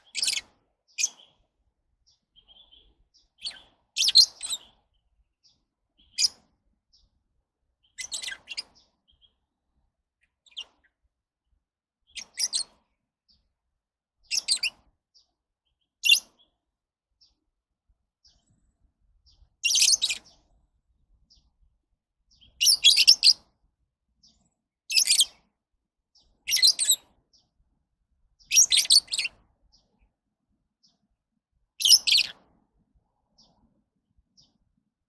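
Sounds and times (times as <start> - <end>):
lovebirds chirping: 0.0 - 7.2, 7.8 - 9.5, 12.1 - 13.5, 14.2 - 16.6, 18.2 - 23.6, 24.2 - 27.6, 28.3 - 30.2, 31.8 - 32.4.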